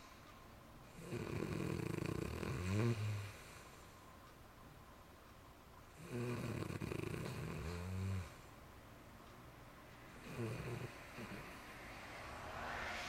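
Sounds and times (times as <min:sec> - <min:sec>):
person snoring: 0:01.0 - 0:03.5, 0:06.0 - 0:08.4, 0:10.2 - 0:11.6.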